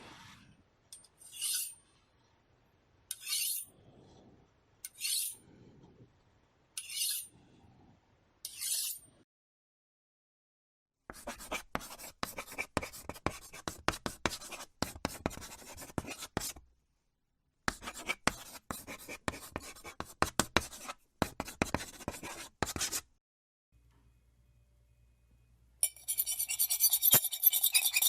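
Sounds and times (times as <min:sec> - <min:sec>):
scratching on a chalkboard: 0:11.1 - 0:16.6, 0:17.7 - 0:23.1, 0:26.0 - 0:28.0.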